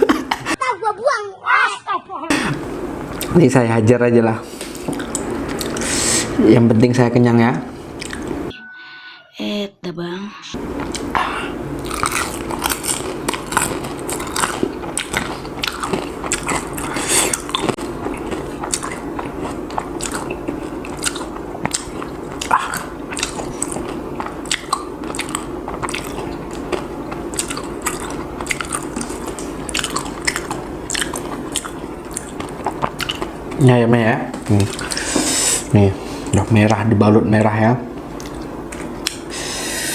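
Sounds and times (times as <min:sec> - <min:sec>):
chewing crispy fried food: 0:04.6 - 0:06.1, 0:07.9 - 0:08.4, 0:10.7 - 0:33.7, 0:34.3 - 0:35.2.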